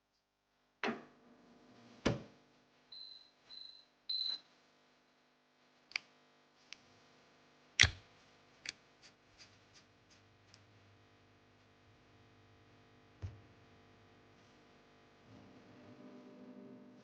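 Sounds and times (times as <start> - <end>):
short high beeps: 3.0 - 4.4.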